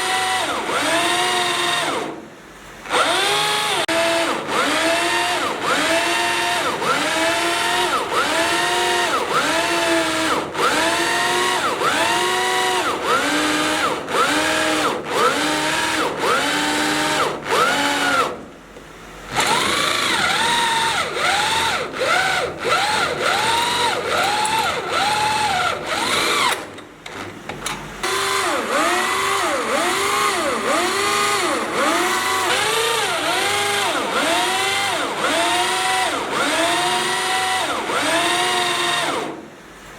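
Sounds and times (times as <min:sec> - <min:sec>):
power drill boring into steel: 0:00.0 - 0:02.2, 0:02.9 - 0:18.4, 0:19.3 - 0:26.7, 0:28.0 - 0:39.4.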